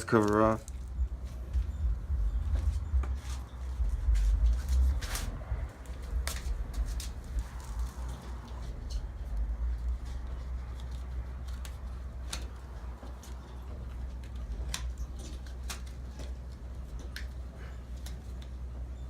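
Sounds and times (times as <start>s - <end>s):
low rumble: 0.6s - 15.4s.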